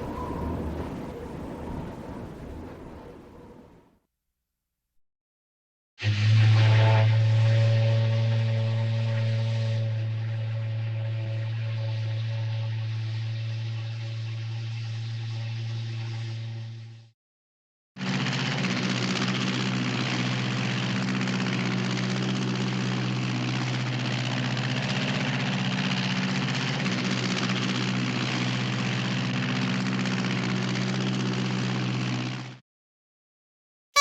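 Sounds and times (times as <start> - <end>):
mechanical drone: 0.0 - 3.7, 6.0 - 17.0.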